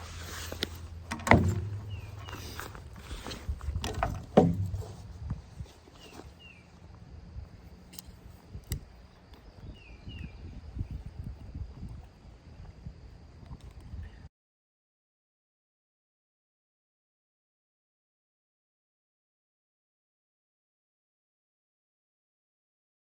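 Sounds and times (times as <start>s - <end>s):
bird chirping: 1.2s - 3.2s.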